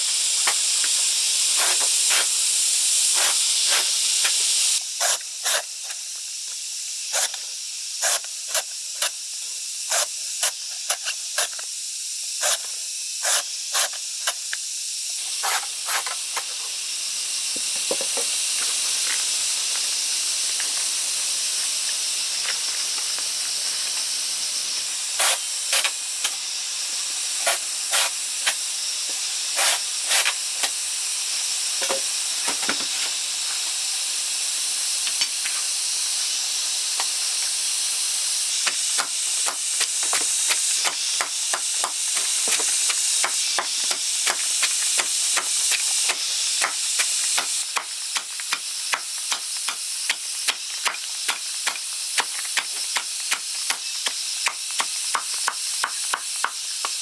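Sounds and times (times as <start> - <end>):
steady high hiss: 0.0 - 57.0.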